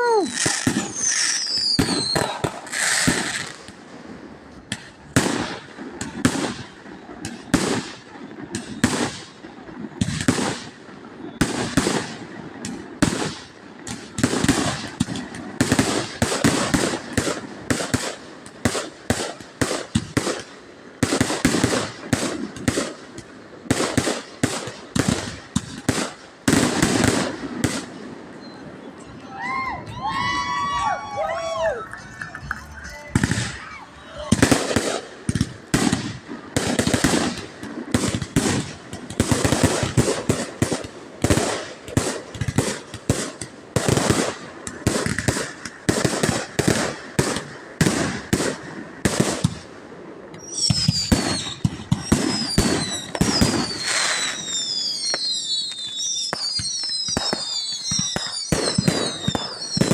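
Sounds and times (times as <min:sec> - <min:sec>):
falling firework whistle: 0:00.0 - 0:03.5, 0:28.3 - 0:35.0, 0:50.4 - 0:59.9
firework bangs and crackling: 0:00.0 - 0:59.9.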